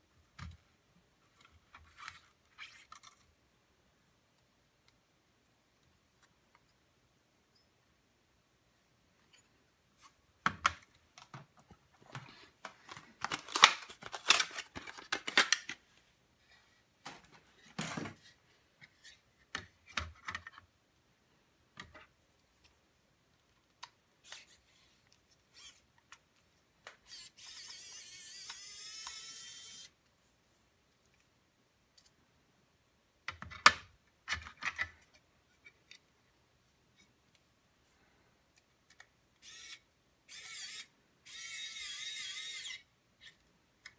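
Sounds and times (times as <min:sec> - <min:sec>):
plastic and metal parts clicking: 0:12.1 - 0:15.8.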